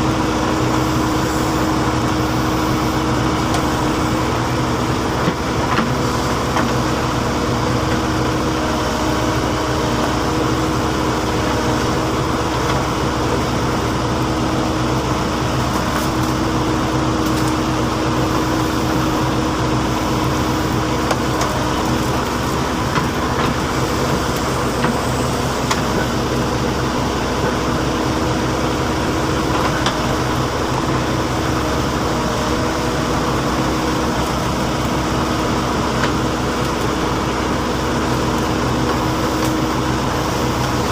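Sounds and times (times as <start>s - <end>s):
diesel engine running steadily: 0.0s - 40.9s.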